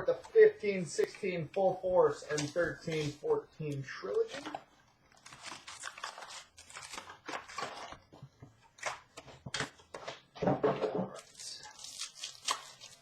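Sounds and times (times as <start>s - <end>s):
foil packs crinkling and tearing: 5.1s - 8.1s, 11.1s - 13.0s.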